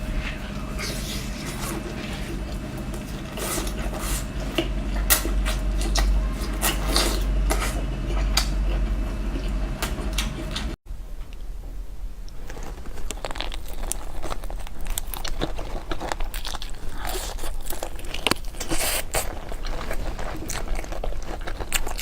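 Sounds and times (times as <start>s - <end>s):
steady low hum: 0.0s - 12.4s.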